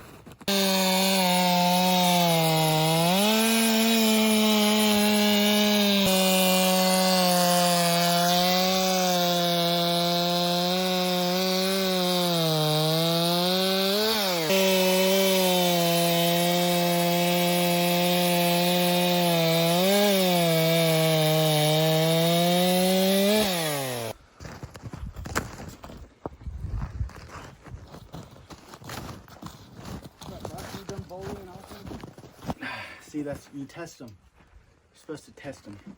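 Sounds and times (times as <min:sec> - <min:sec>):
chainsaw cutting wood: 0:00.4 - 0:24.2.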